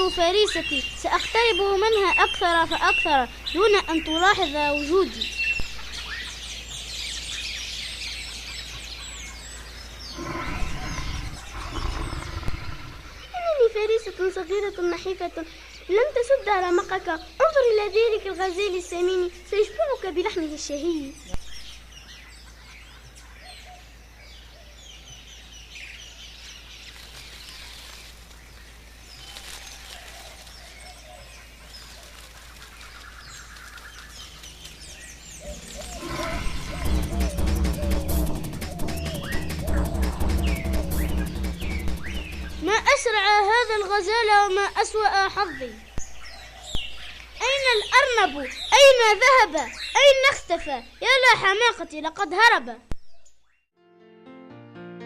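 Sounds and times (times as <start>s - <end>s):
small birds chirping: 0.0s - 53.7s
rough low noise: 10.1s - 13.4s, 35.2s - 44.1s.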